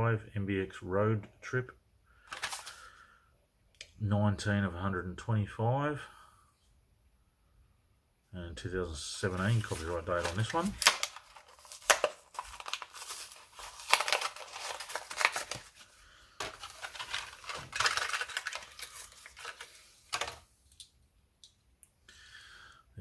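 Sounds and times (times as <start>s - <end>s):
plastic and cardboard tearing: 9.4s - 20.4s.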